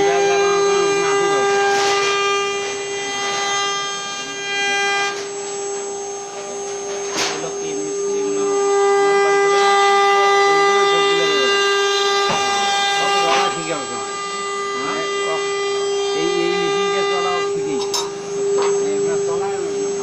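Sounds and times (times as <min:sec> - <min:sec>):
router spindle whine: 0:00.0 - 0:20.0.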